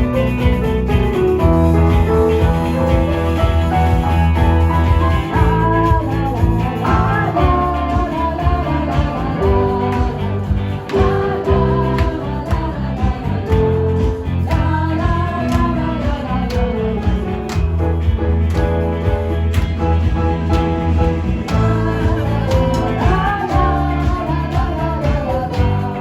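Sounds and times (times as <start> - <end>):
bass line: 0.0 - 26.0
guitar: 0.0 - 26.0
person singing: 1.7 - 17.6, 21.5 - 26.0.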